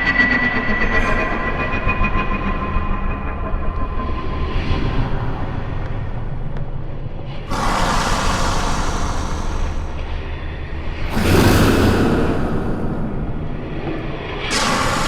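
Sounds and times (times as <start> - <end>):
loud hissing wash of noise: 7.5 - 15.0
steady low rumble: 7.5 - 15.0.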